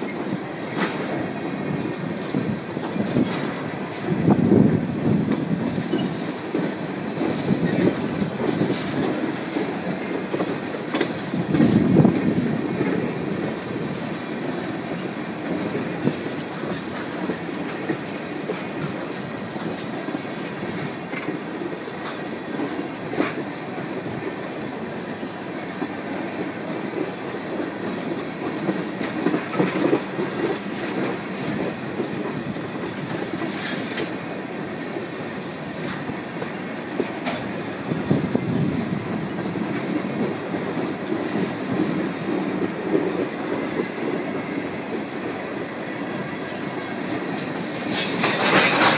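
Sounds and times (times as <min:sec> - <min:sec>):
train wheel squeals: 0:00.0 - 0:12.2, 0:12.8 - 0:48.9
freight train rumble: 0:00.0 - 0:48.9
train wheel clicks: 0:00.0 - 0:48.9.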